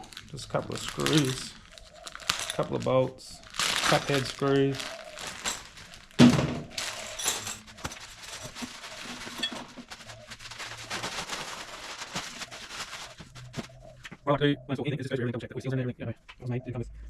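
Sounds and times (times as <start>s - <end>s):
packaging rustling: 0.0s - 14.2s.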